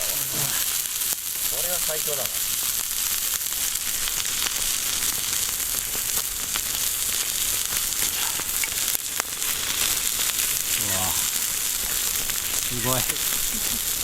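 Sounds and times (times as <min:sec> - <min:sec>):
steak sizzling on a griddle: 0:00.0 - 0:14.0
sharp fat pops: 0:02.3 - 0:14.0.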